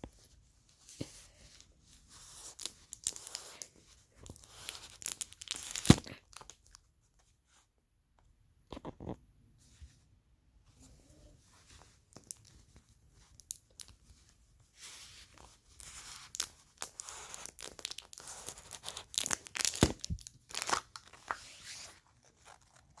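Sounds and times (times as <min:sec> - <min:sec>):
plastic packaging tearing and crinkling: 0:04.4 - 0:06.6, 0:16.1 - 0:23.0.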